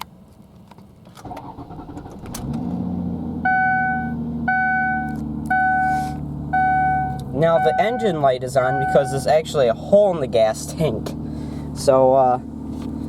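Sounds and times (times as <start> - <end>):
car engine cranking and idling: 0.0 - 13.0
two-tone warning chime: 3.5 - 6.0, 6.6 - 9.2.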